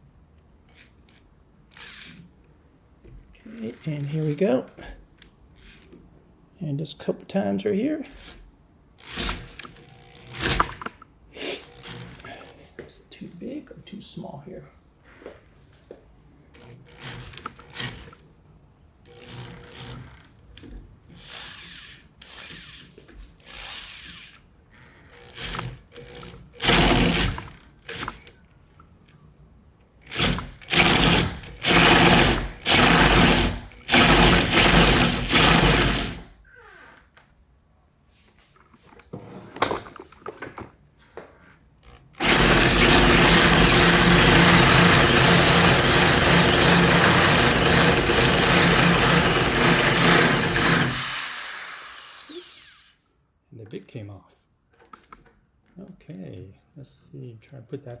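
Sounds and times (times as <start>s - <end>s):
power drill boring into wood: 8.1s - 10.8s, 11.6s - 12.3s, 16.6s - 18.2s, 19.1s - 20.4s, 21.2s - 28.3s, 30.0s - 36.4s, 42.2s - 53.0s.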